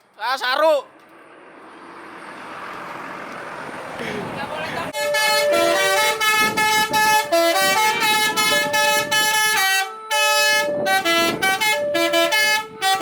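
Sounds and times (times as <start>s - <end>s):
multi-trumpet air horn tune: 5.0s - 13.0s.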